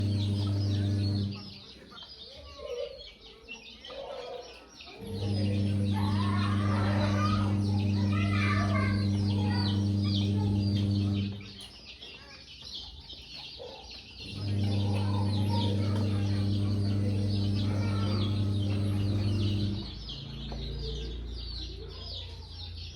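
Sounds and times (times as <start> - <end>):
low electrical hum: 0.0 - 1.6, 5.0 - 11.7, 14.2 - 22.0
chicks peeping: 0.0 - 22.9.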